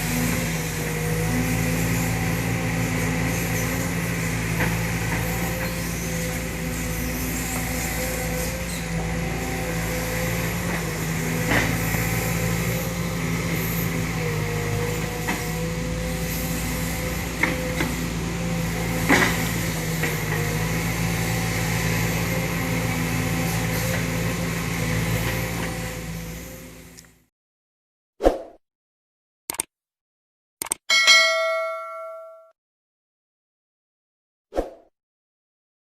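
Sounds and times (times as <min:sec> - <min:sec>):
excavator diesel engine drone: 0:00.0 - 0:27.3.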